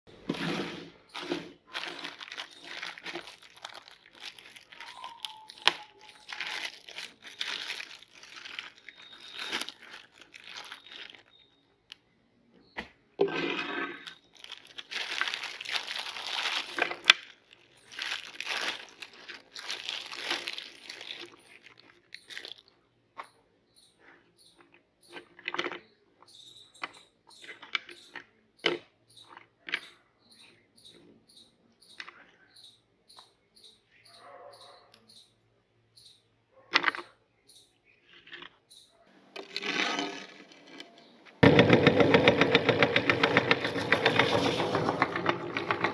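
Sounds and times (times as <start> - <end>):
cookies crunching in a grinder: 0.1 - 11.5, 13.3 - 22.9, 39.4 - 40.8, 41.4 - 45.9.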